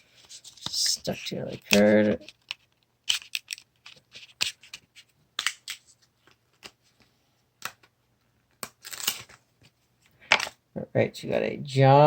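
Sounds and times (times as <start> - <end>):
cards snapping and clicking: 5.4 - 5.8, 8.6 - 9.4.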